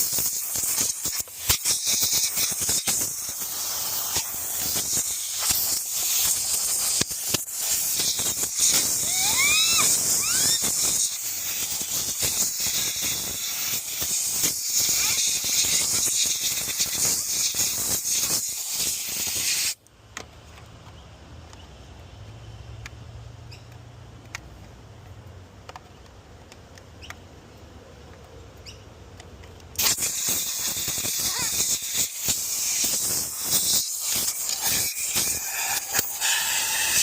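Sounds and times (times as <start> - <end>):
compressed air blow gun hissing: 0.0 - 19.8, 29.8 - 37.0.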